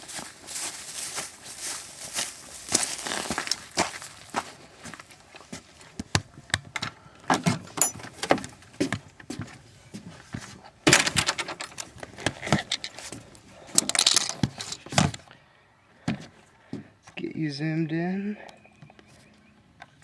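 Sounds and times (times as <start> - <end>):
clicks and rattles of handling: 10.8 - 15.2.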